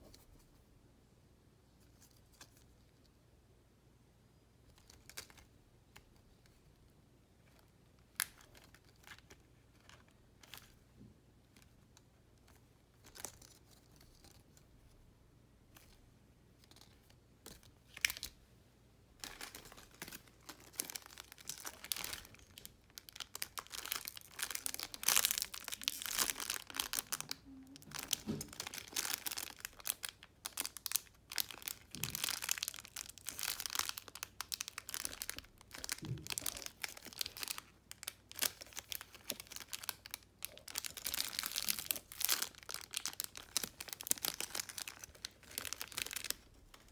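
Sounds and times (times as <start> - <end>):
plastic packaging crinkling: 19.2 - 46.9.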